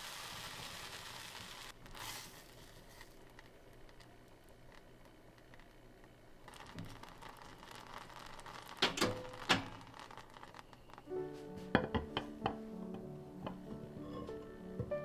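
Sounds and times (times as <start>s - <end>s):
soft music with plucked notes: 11.1s - 15.0s
kitchen handling noises: 11.6s - 15.0s.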